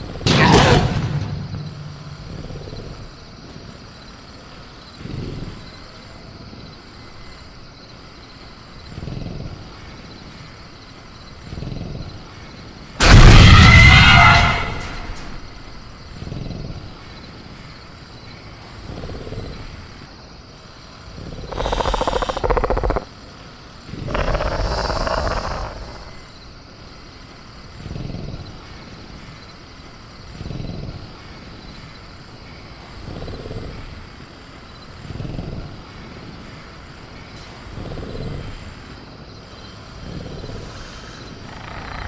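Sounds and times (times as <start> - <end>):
faint high crickets: 0.0 - 42.0
soft low rumbles: 0.1 - 3.8
sudden loud crash: 0.2 - 3.1, 13.0 - 15.5.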